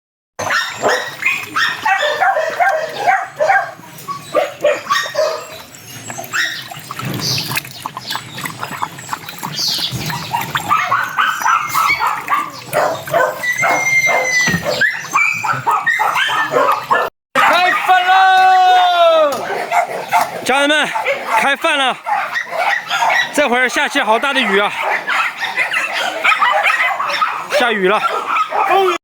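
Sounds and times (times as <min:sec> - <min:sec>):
dogs yipping and barking: 0:00.4 - 0:29.0
dog whining: 0:10.1 - 0:17.6
dog whimpering: 0:10.8 - 0:17.1.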